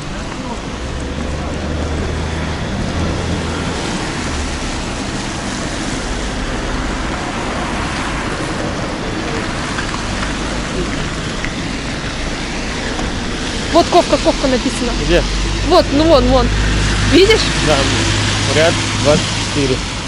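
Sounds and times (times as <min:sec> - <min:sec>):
outdoor background noise: 0:00.0 - 0:20.0.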